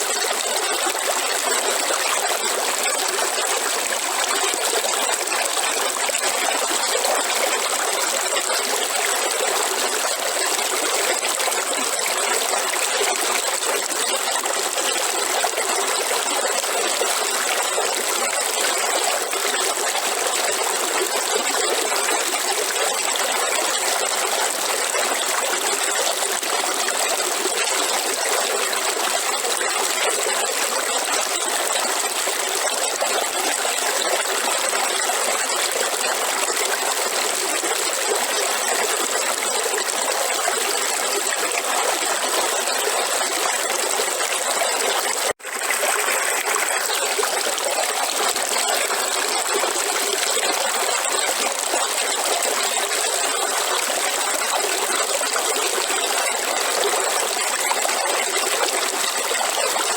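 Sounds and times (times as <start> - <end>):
river water running: 0.0 - 6.8, 34.0 - 59.3.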